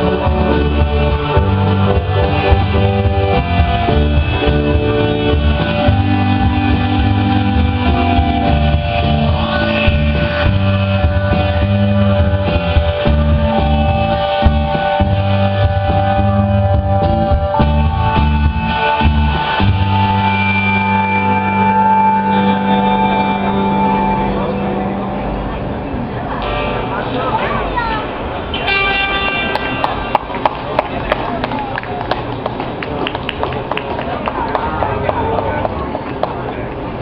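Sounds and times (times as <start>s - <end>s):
drum kit beat: 0.0s - 22.9s
synthesizer: 0.0s - 29.3s
electric guitar: 0.0s - 30.6s
bass: 0.0s - 37.0s.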